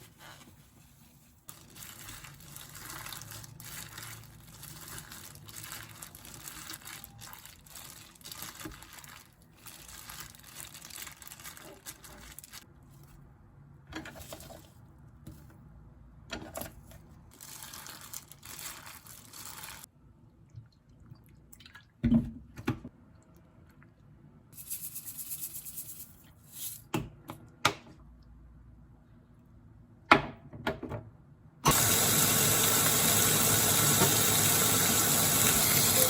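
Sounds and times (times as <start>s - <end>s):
running water bursts: 31.7s - 36.0s.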